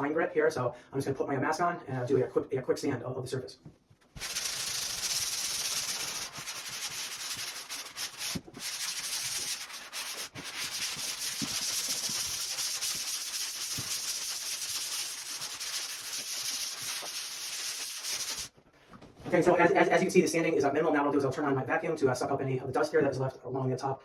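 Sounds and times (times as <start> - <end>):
sanding pad scratching drywall: 4.2 - 18.5.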